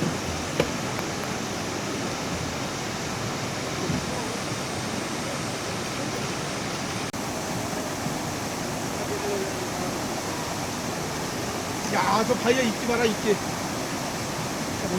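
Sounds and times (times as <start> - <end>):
stream rushing: 0.0 - 14.9.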